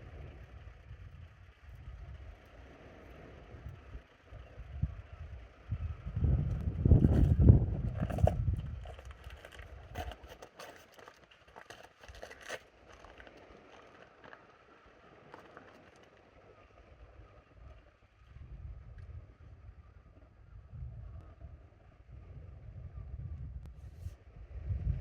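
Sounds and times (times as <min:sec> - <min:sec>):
wind buffeting microphone: 0:00.0 - 0:10.2, 0:17.3 - 0:25.0.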